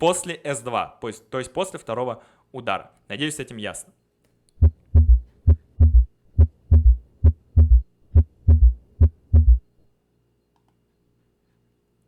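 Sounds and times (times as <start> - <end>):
heartbeat thuds with gallop: 4.6 - 9.6.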